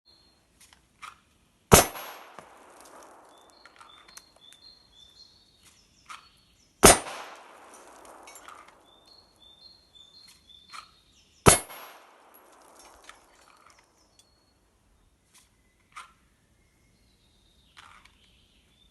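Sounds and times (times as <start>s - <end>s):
pistol shots with echo: 1.7s - 4.0s, 6.8s - 9.3s, 11.4s - 13.5s.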